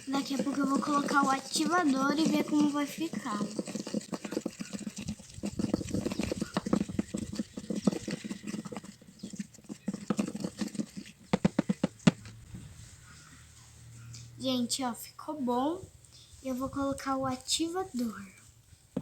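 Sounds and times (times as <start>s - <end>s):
slime squelching as stirred: 0.0s - 13.4s.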